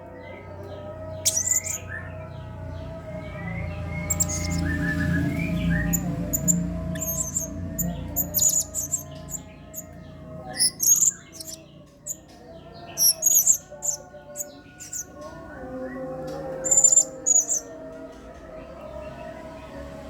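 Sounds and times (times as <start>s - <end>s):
parrot high chirps: 1.2s - 1.8s, 4.1s - 4.6s, 5.9s - 9.8s, 10.5s - 11.6s, 13.0s - 15.0s, 16.6s - 17.6s.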